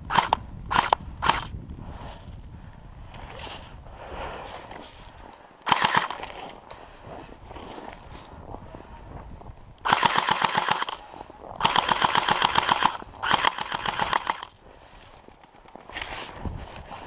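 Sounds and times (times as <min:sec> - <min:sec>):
airsoft gun firing bursts: 0:00.0 - 0:01.5, 0:05.6 - 0:06.2, 0:09.8 - 0:11.0, 0:11.6 - 0:14.6.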